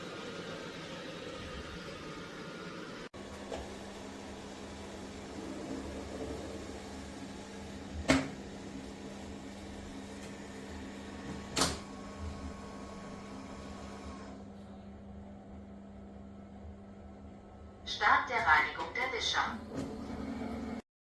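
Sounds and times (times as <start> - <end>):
robot vacuum humming: 0.0 - 14.3.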